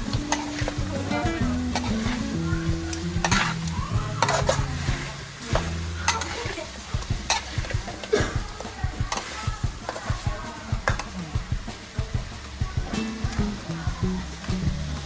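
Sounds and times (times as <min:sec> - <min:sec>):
utensil clinking against pot: 0:00.0 - 0:10.2
food sizzling: 0:00.0 - 0:15.0.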